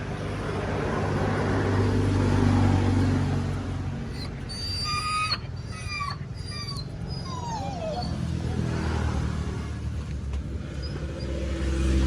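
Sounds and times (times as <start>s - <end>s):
low engine-like hum: 0.0s - 12.0s
dog whimpering: 4.1s - 8.7s.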